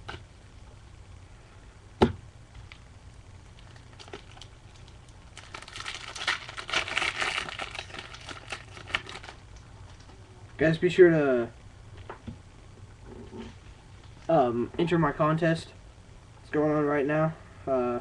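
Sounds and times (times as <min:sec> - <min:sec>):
wrapper crinkling and tearing: 0:03.6 - 0:10.1.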